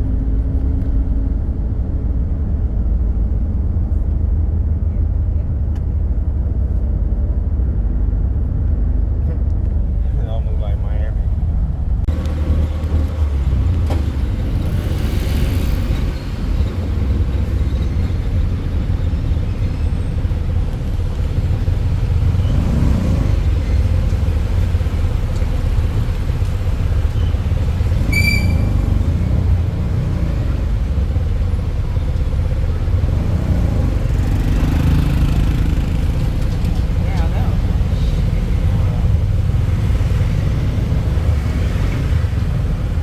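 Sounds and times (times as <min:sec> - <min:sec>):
vehicle engine and road noise: 0:00.0 - 0:43.0
high-pitched beep: 0:28.1 - 0:28.8.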